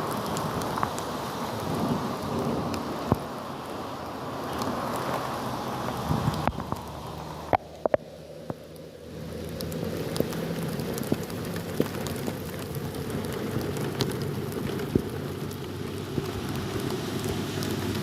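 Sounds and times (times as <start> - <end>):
heavy rain falling: 0.0 - 18.0
raindrop impacts tapping: 4.5 - 18.0.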